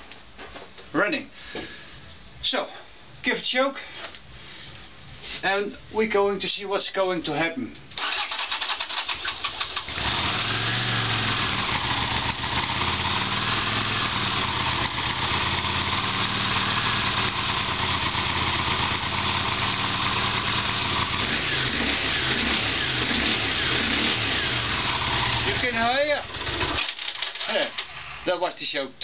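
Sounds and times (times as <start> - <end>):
motorcycle engine running: 9.8 - 27.3.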